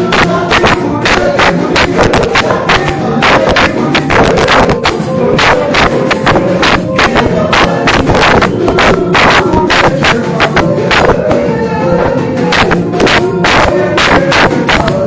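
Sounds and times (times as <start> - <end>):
fast drum beat: 0.0 - 15.0
upbeat praise music: 0.0 - 15.0.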